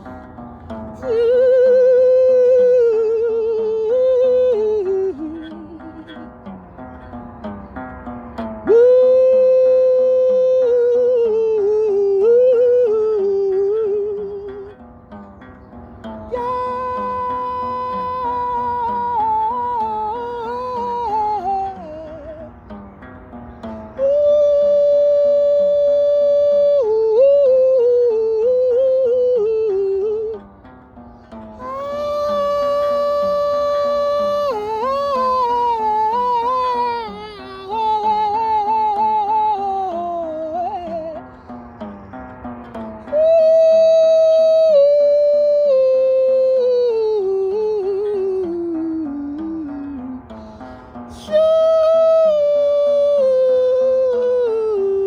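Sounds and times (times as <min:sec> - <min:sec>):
plucked accompaniment: 0:00.0 - 0:55.0
person singing yodel-like: 0:16.3 - 0:22.5, 0:31.6 - 0:41.2.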